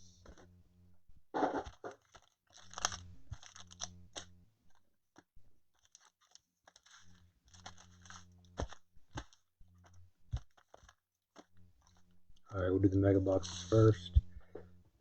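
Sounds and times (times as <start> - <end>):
card packs and boxes rustling: 1.4 - 12.1.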